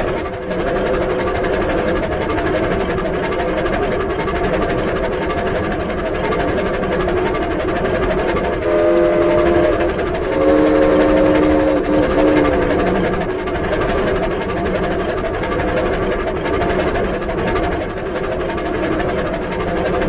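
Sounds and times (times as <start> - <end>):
steam train chuffing: 0.0 - 20.0
train whistle blasts: 8.6 - 13.2.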